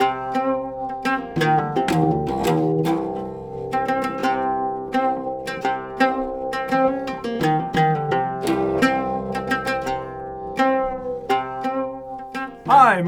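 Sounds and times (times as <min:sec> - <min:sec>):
plucked string music: 0:00.0 - 0:13.0.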